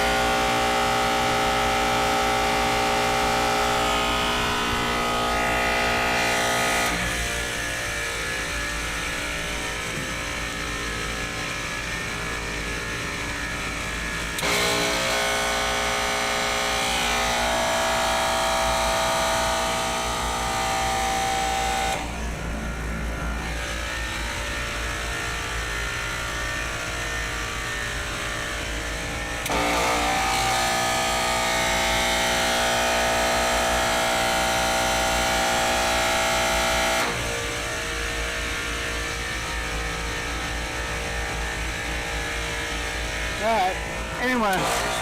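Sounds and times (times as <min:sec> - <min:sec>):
compressor humming: 0:00.0 - 0:15.0, 0:37.3 - 0:45.0.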